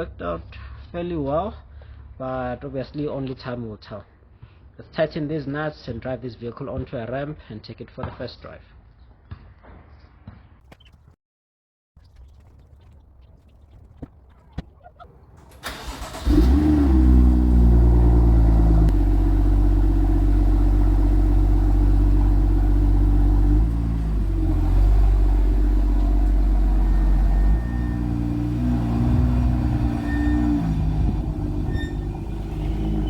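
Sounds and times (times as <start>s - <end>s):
car engine starting and idling: 15.2s - 33.0s.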